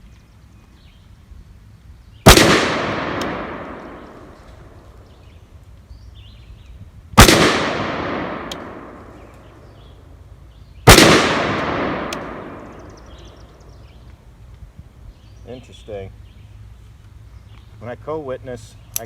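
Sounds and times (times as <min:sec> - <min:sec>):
gunshots with long echo: 0:02.3 - 0:04.8, 0:07.2 - 0:09.6, 0:10.8 - 0:13.4.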